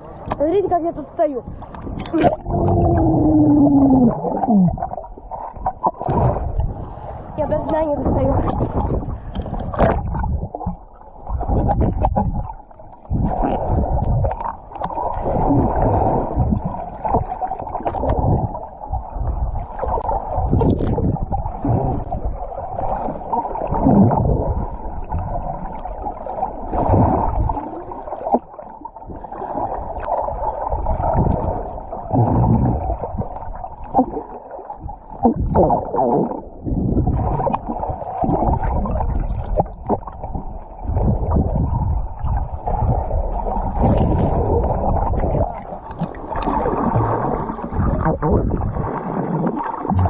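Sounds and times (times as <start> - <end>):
low rumbling surges: 0.0 - 5.0
sea water sloshing and gurgling: 0.0 - 50.0.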